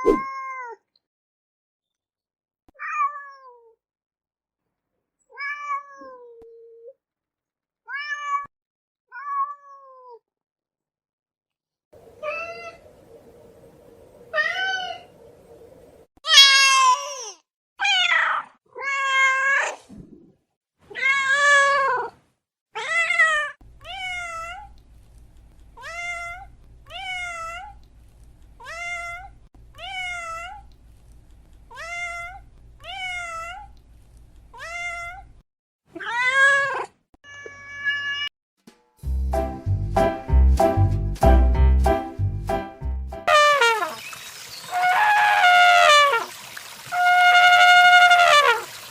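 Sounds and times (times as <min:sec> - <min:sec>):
cat meowing: 0:02.8 - 0:03.7, 0:05.3 - 0:06.4, 0:07.9 - 0:08.5, 0:09.1 - 0:10.2, 0:16.3 - 0:19.7, 0:22.8 - 0:24.8, 0:25.8 - 0:27.8, 0:28.6 - 0:30.7, 0:31.7 - 0:33.8, 0:34.5 - 0:35.3, 0:36.0 - 0:38.3.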